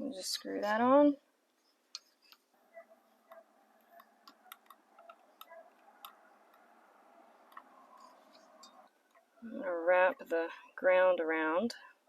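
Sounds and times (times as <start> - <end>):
wires clicking as handled: 3.3 - 6.7.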